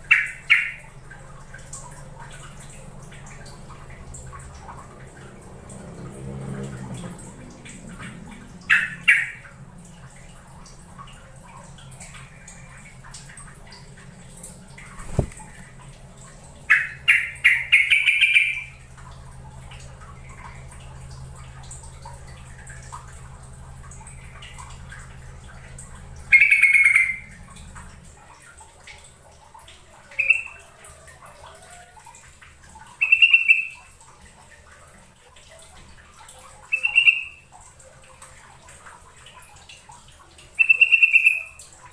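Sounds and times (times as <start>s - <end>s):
bulbul bubbling calls: 0.0s - 1.0s, 7.8s - 9.6s, 16.6s - 20.7s, 22.0s - 27.6s, 29.9s - 31.8s, 32.8s - 33.9s, 36.6s - 37.6s, 40.4s - 41.9s
low steady hum: 0.0s - 41.9s.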